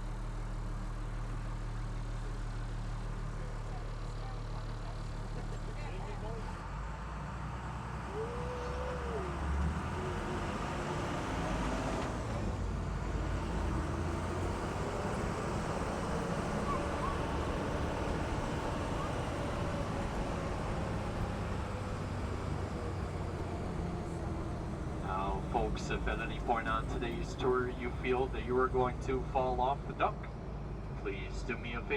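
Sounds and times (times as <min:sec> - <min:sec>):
engine low drone: 0:00.0 - 0:31.9.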